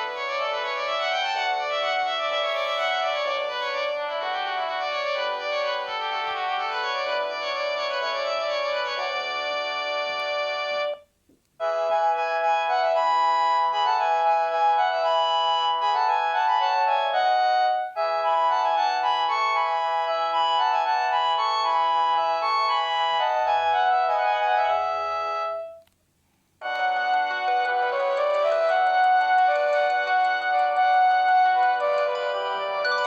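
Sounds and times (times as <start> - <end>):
cordless phone electronic ringtone: 31.6 - 33.0.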